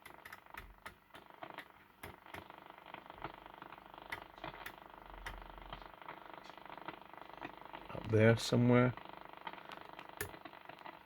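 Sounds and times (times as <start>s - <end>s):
interference crackles and clicks: 0.0s - 11.0s
radio static hiss: 0.4s - 11.0s.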